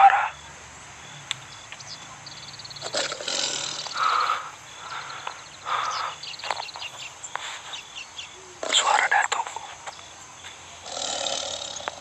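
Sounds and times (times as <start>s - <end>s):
tiger growling roar: 2.8s - 4.3s, 10.8s - 12.0s.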